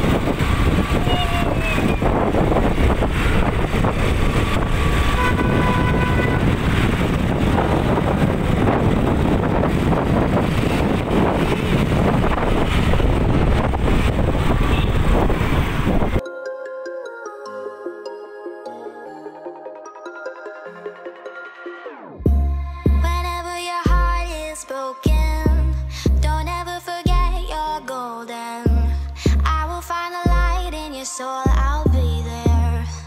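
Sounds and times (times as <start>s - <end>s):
motorbike rumble: 0.0s - 16.2s
road traffic: 0.0s - 16.2s, 28.7s - 30.9s
wind buffeting microphone: 0.0s - 16.2s.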